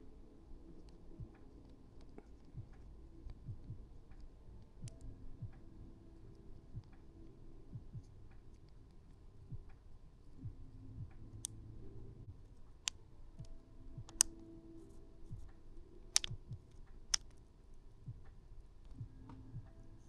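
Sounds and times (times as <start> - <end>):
plastic tool clicking: 14.1 - 14.3, 16.1 - 16.4.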